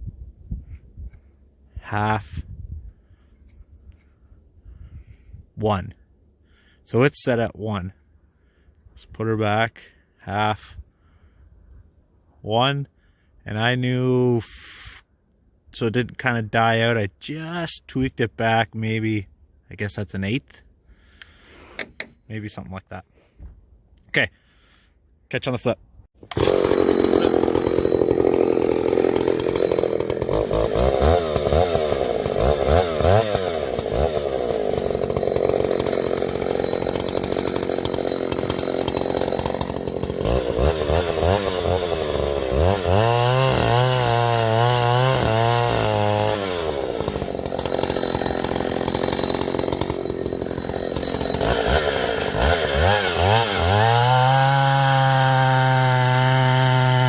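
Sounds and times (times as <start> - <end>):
chainsaw revving: 26.2 - 57.0.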